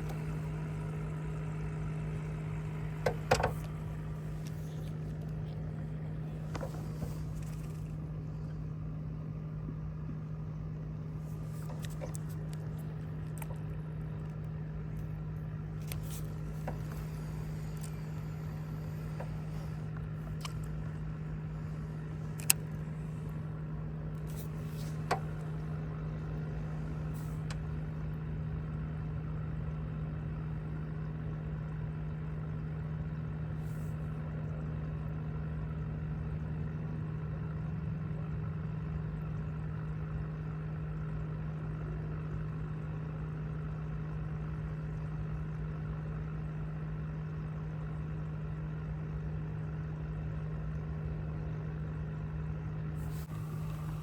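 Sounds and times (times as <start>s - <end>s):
boat motor humming: 0.0s - 28.8s, 50.0s - 54.0s.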